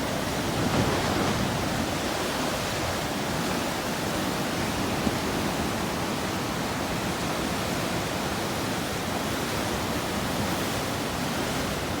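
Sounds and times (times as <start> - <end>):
ocean surf rushing: 0.0 - 3.6
wind: 0.0 - 12.0.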